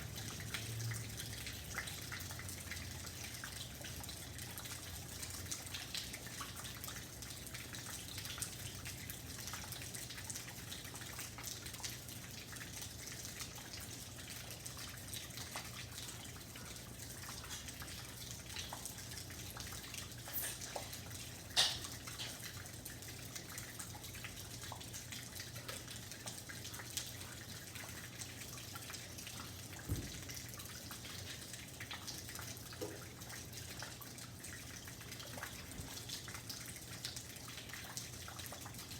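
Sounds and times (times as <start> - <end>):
drops ticking and dripping: 0.0 - 38.9
dull thump: 29.9 - 30.2.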